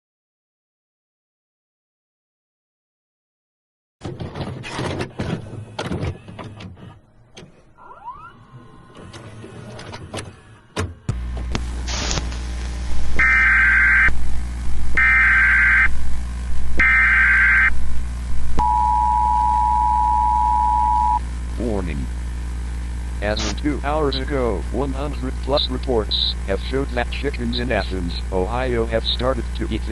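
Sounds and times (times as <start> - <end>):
low electrical hum: 10.4 - 29.9
crackling static with clicks: 11.1 - 18.7, 21.0 - 24.3
alert data tone bursts: 13.2 - 14.2, 18.6 - 21.2.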